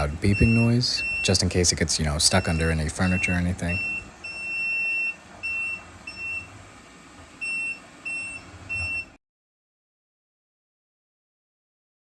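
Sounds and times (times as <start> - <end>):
robot vacuum alarm beeping: 0.0 - 6.6, 7.4 - 9.2.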